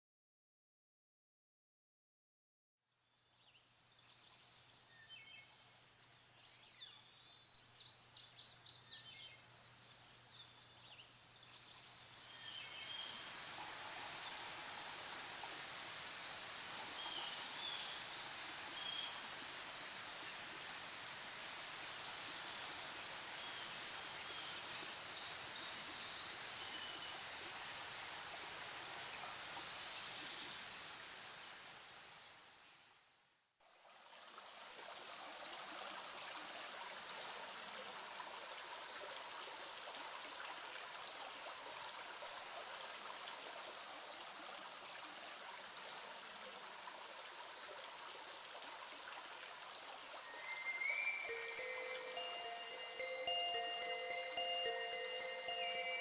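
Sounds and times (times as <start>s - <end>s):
songbirds calling: 3.3s - 28.4s, 50.2s - 56.0s
running water: 4.3s - 32.9s, 33.6s - 56.0s.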